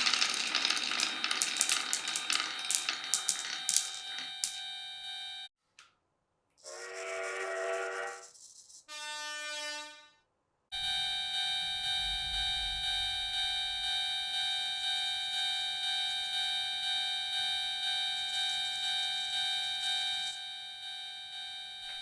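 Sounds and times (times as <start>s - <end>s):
short horn-like tone: 6.6s - 10.2s.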